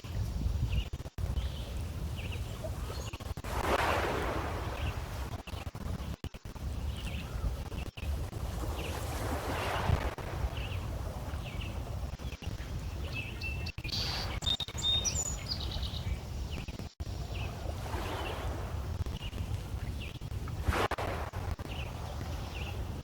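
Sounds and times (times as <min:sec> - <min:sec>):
birds chirping: 0:00.0 - 0:03.4, 0:04.5 - 0:09.1, 0:10.4 - 0:20.4, 0:21.5 - 0:22.9
waves lapping against stones: 0:00.0 - 0:15.4, 0:16.6 - 0:23.0
high bird calls: 0:11.4 - 0:16.7.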